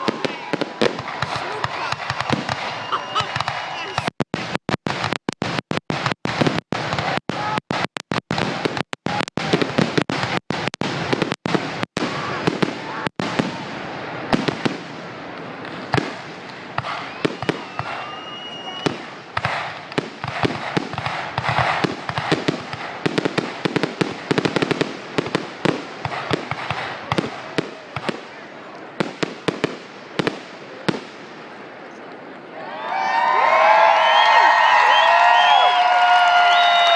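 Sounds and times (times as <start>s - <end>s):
firework whistle: 0.0s - 4.2s, 16.8s - 22.6s, 33.6s - 36.9s
fireworks bangs and crackling: 0.0s - 32.5s, 33.2s - 36.9s.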